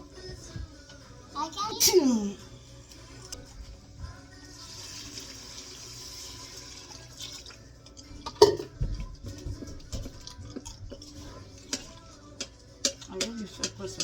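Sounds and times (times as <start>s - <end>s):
kitchen tap running: 4.5s - 7.6s.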